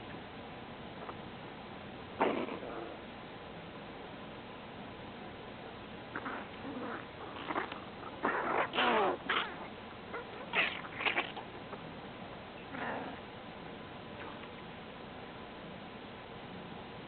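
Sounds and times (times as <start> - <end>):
dog stomach gurgling: 6.2 - 11.6.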